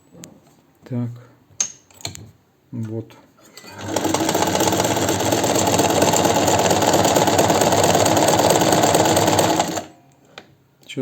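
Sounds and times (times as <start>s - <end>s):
sewing machine running fast: 3.6s - 9.9s.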